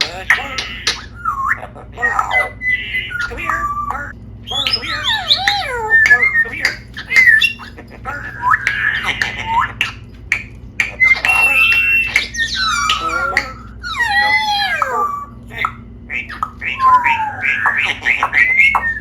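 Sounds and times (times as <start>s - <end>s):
parrot squawking and whistling: 0.0s - 19.0s
parrot clicks: 8.6s - 13.7s.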